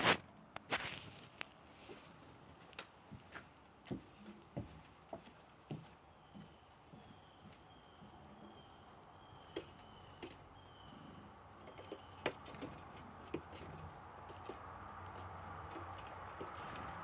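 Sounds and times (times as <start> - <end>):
birds tapping at feeder: 6.2 - 17.0.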